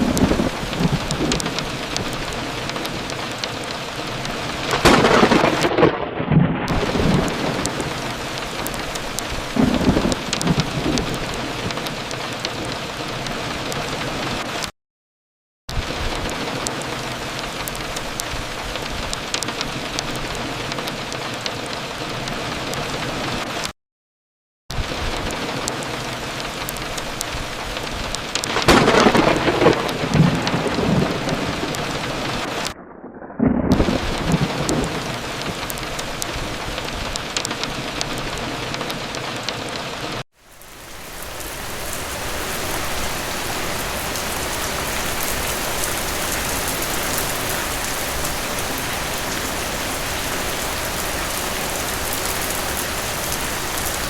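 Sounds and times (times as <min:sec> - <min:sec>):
thunder rumbling: 0:00.0 - 0:14.1, 0:24.8 - 0:39.2, 0:40.6 - 0:54.0
steady rain falling: 0:00.0 - 0:14.7, 0:15.7 - 0:23.7, 0:24.7 - 0:54.0.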